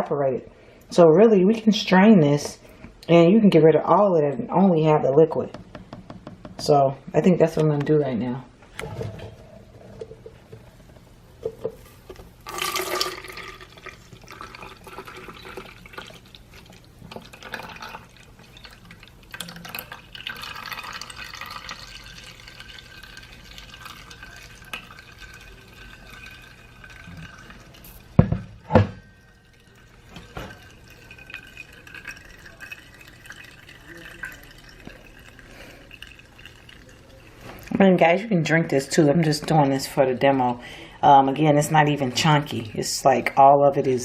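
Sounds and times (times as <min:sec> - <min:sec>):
juice trickling through strainer: 0:08.8 - 0:38.2
loud thumps: 0:28.2 - 0:29.1.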